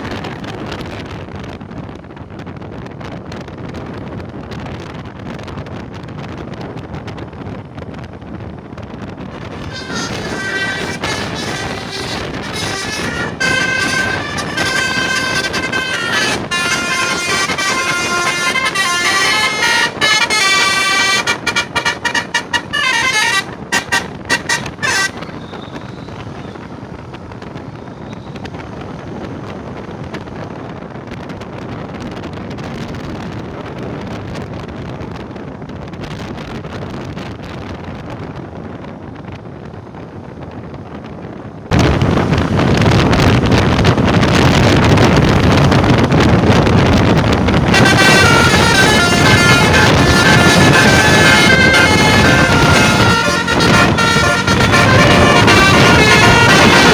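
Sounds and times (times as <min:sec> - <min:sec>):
steady noise: 0:09.4 - 0:27.8, 0:41.7 - 0:56.9
bus musical horn playing melody: 0:09.4 - 0:30.0, 0:41.8 - 0:56.9.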